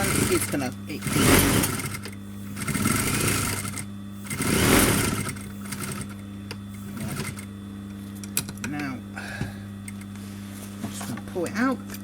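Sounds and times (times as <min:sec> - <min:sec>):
sewing machine stitching: 0:00.0 - 0:06.2, 0:06.9 - 0:07.5
steady low hum: 0:00.0 - 0:12.0.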